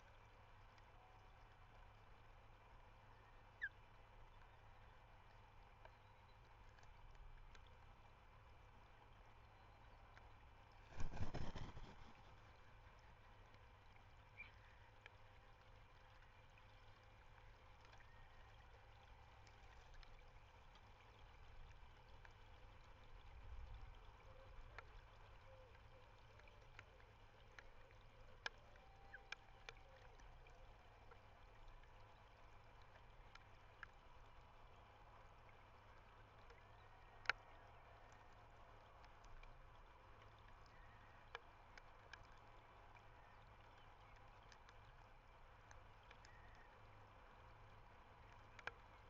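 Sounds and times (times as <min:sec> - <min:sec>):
faint outdoor ambience: 0:00.0 - 0:49.0.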